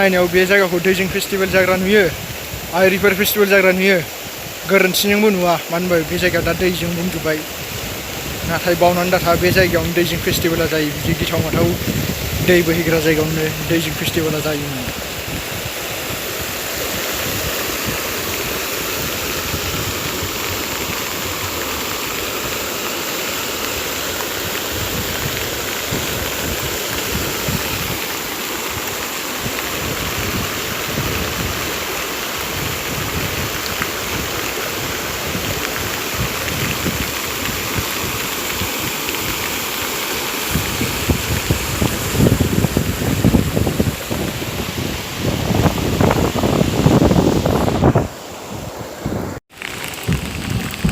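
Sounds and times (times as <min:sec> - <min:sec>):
floodwater flowing: 0:00.0 - 0:50.9
wind buffeting microphone: 0:06.0 - 0:22.0, 0:24.3 - 0:28.1, 0:28.7 - 0:31.8, 0:32.4 - 0:39.4, 0:40.4 - 0:50.9.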